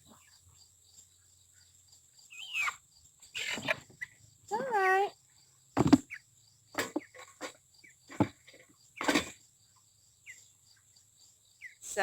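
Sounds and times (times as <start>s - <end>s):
high insect buzz: 0.0s - 12.0s
chickens peeping: 2.2s - 4.2s
rustling knocks: 5.8s - 6.1s, 6.8s - 9.4s.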